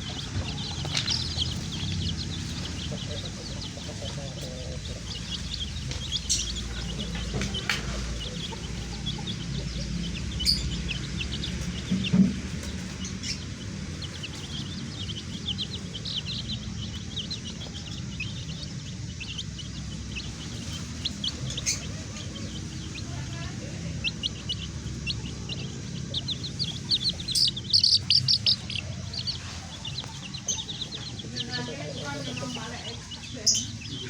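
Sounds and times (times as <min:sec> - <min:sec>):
baby chicks peeping: 0:00.0 - 0:34.0
knocks and thumps: 0:11.8 - 0:13.0.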